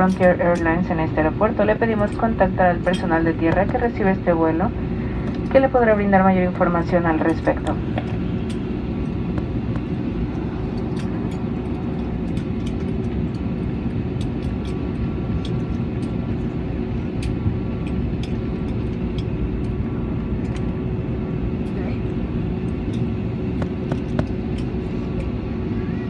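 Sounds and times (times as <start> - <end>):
airliner cabin hum: 0.0 - 26.0.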